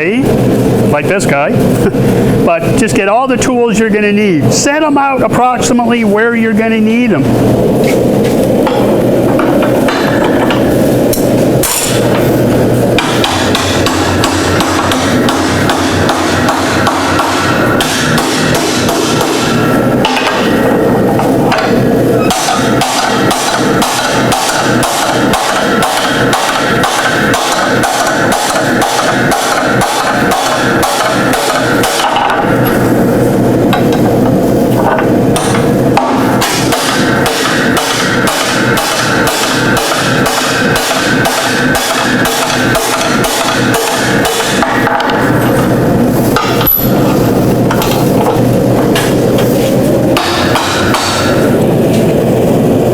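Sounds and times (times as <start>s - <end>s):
continuous steady noise: 0.0s - 52.9s
hammer striking hot steel bar: 8.6s - 12.2s, 13.0s - 32.7s, 34.9s - 45.3s, 46.4s - 47.0s, 50.2s - 51.6s.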